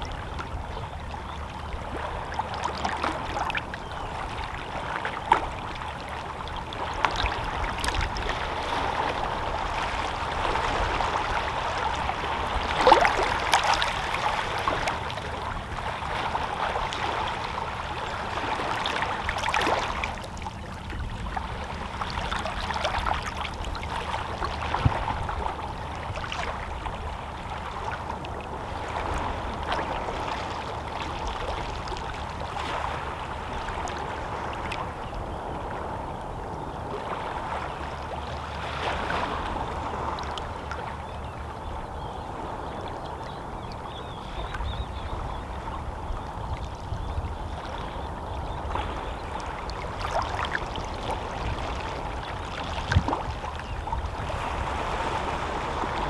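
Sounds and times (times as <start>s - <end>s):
waves lapping against rocks: 1.8s - 36.0s, 43.7s - 56.0s.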